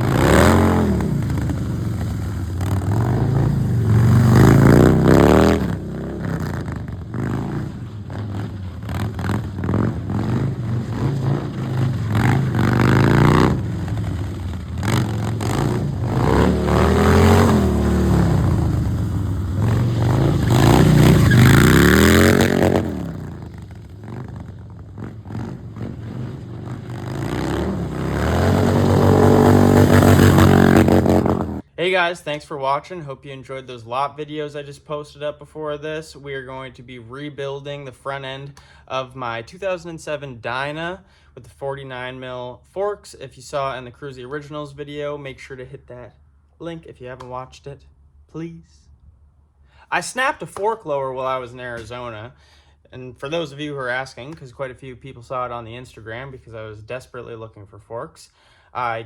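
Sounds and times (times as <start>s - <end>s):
motorcycle engines revving: 0.0s - 31.6s.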